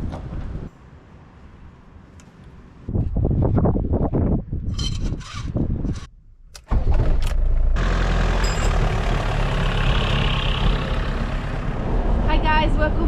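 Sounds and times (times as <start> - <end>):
engine starting and running: 6.4 - 12.3.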